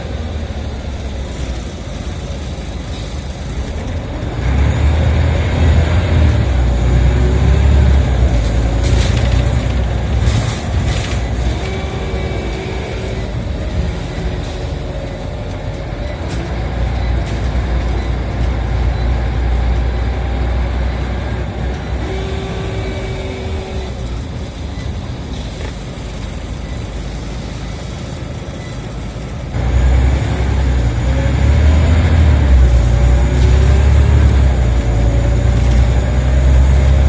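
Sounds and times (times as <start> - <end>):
bus engine and road rumble: 0.0 - 37.0
whine-like tone: 10.9 - 16.1, 21.8 - 25.8.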